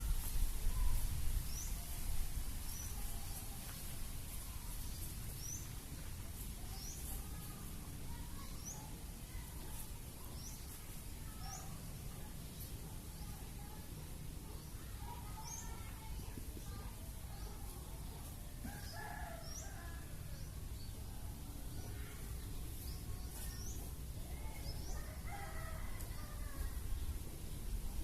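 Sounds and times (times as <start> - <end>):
wind rumble on microphone: 0.0 - 4.6
small bird chirping: 0.7 - 6.1.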